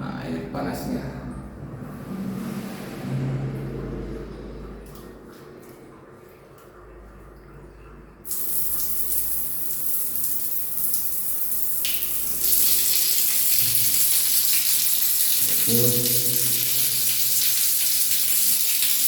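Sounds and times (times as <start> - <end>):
water running from tap: 8.2 - 19.0.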